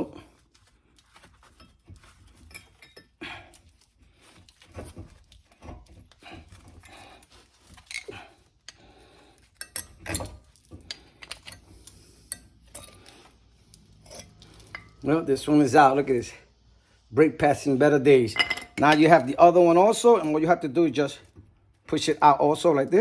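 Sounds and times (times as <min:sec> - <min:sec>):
metallic scrapes and clinks: 0:01.2 - 0:03.8, 0:07.6 - 0:08.8, 0:09.4 - 0:15.1.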